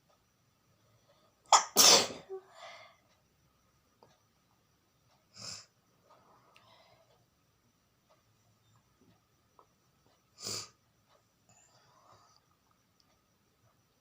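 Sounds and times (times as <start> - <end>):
woman sneezing: 1.6 - 2.4.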